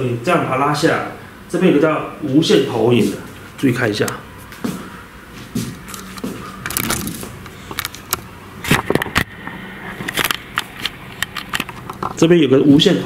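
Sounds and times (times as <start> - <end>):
hands handling tablet clicks: 10.0 - 12.2.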